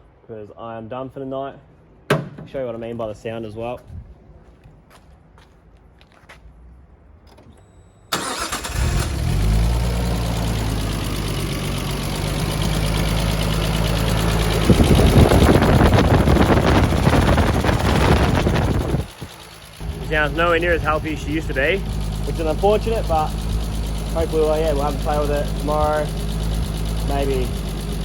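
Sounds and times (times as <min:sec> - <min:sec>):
car engine running rough: 0:08.2 - 0:28.0.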